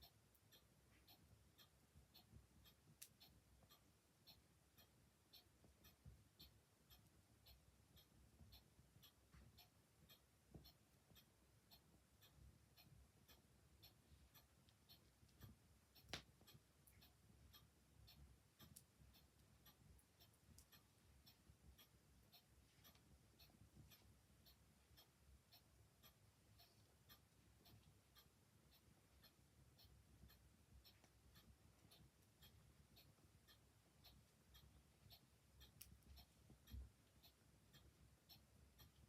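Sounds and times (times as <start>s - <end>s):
clock ticking: 0.0s - 39.0s.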